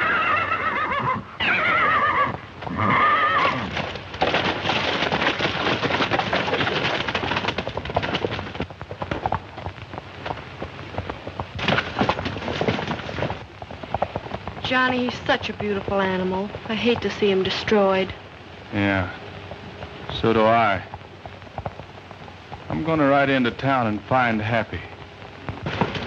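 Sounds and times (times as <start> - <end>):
horse neighing: 0.0 - 3.9
rapid hoofbeats: 0.0 - 26.0.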